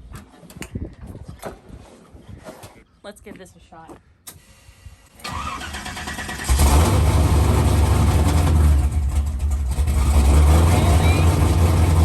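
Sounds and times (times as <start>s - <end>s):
engine cranking: 5.2s - 12.0s
engine running loudly: 6.5s - 12.0s.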